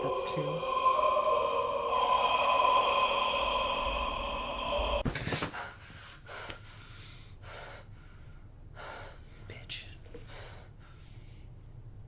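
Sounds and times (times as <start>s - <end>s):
droning high chord soundtrack: 0.0s - 5.0s
soft heavy breaths: 0.0s - 9.5s, 10.1s - 11.8s.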